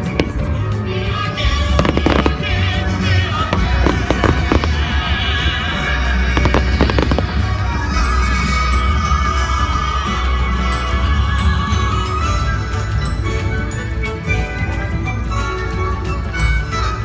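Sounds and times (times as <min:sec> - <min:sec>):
fireworks banging and crackling: 0:00.0 - 0:08.4
music playing: 0:00.0 - 0:17.0.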